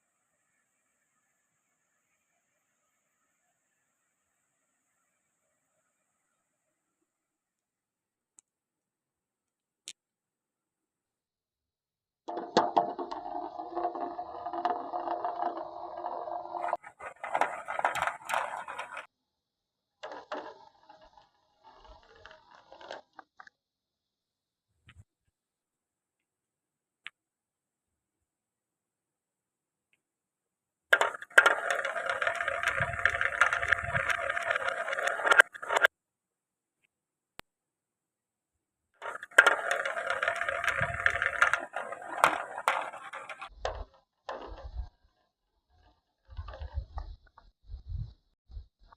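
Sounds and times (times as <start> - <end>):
marbles clacking: 12.3 - 19.1, 30.9 - 35.9, 39.0 - 44.8
marbles rolling on wooden track: 12.3 - 19.1, 20.0 - 23.3, 30.9 - 35.9, 39.0 - 44.9.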